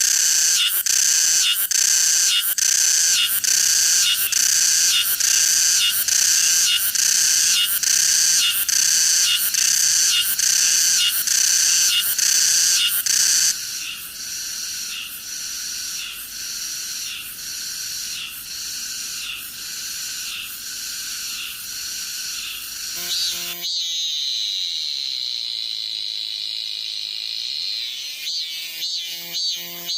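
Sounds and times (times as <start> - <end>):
cicada singing: 0.0 - 29.9.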